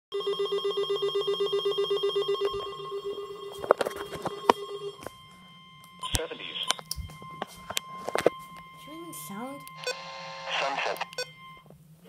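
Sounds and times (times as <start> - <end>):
electronic alert tone pulsing: 7.1 - 11.6.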